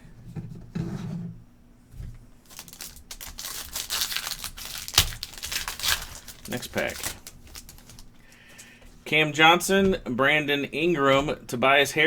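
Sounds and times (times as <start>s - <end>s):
foil pack tearing and crinkling: 2.4s - 8.4s.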